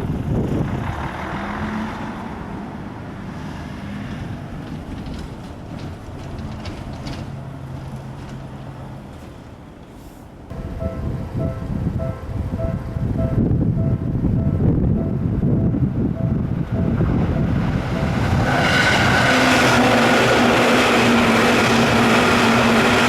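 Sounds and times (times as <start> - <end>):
electric train passing: 10.5 - 23.0.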